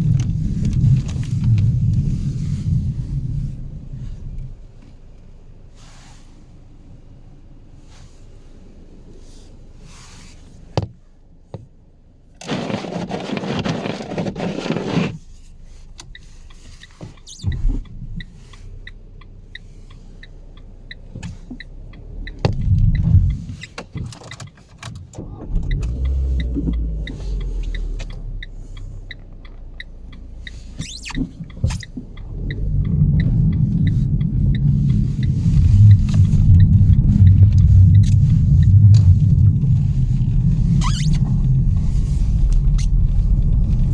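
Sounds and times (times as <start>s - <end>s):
car engine rumbling: 0.0s - 12.6s, 13.9s - 43.9s
regular ticking: 16.0s - 43.9s.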